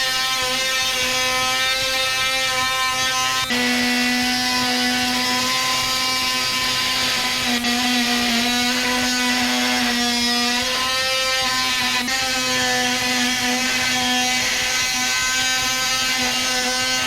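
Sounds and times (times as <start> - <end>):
oscillating tool cutting screw: 0.0 - 17.0.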